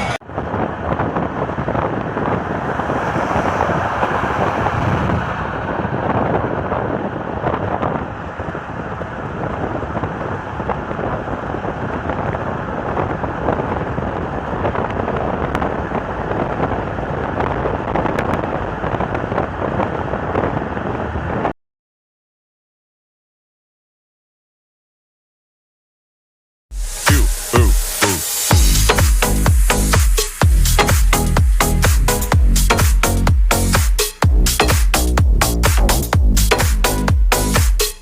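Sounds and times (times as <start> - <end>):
wind buffeting microphone: 0.0 - 21.5
moving vehicle rumble: 0.0 - 21.6, 27.0 - 38.0.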